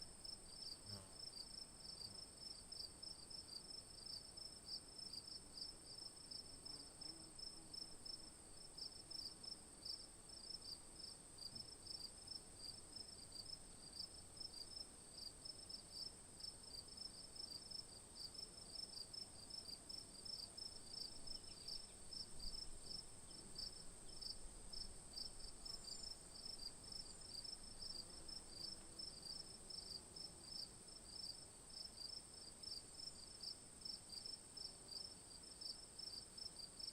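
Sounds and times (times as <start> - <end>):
insects chirping: 18.7 - 32.1.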